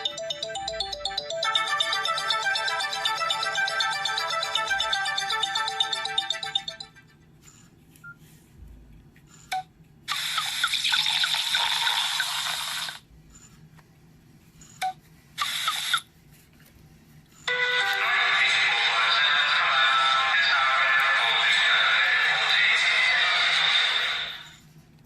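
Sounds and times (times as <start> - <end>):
polyphonic ringtone melody: 0.0 - 7.6, 17.5 - 18.8.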